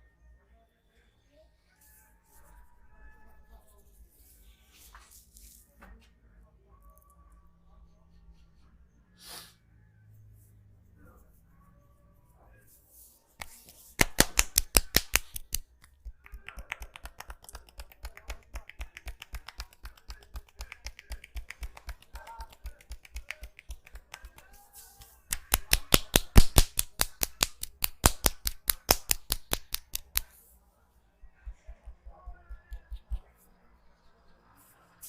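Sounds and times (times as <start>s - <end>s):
hands slapping in rapid massage: 13.4s - 30.4s, 31.2s - 33.3s.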